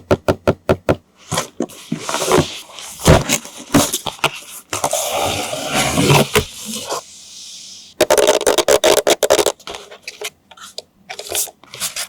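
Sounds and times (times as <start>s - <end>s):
packaging scraping and rustling: 1.3s - 7.0s.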